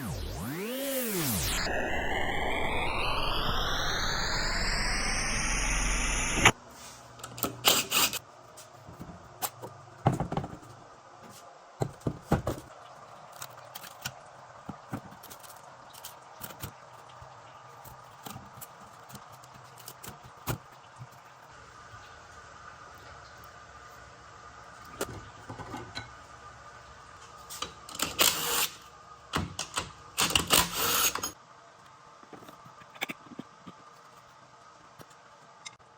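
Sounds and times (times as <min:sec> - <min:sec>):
rising whooshing sweep: 0:00.0 - 0:06.6.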